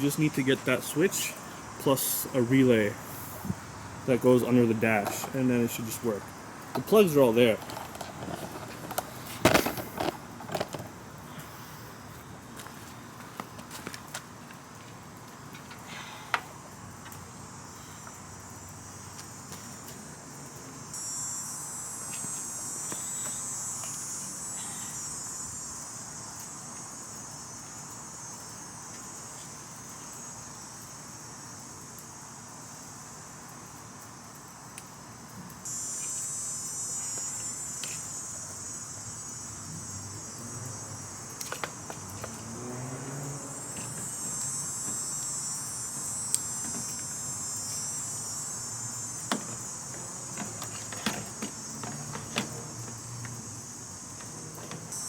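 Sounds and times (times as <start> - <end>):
insect chorus chirring: 0.0 - 55.0
sharp clicks and knocks: 49.2 - 53.4.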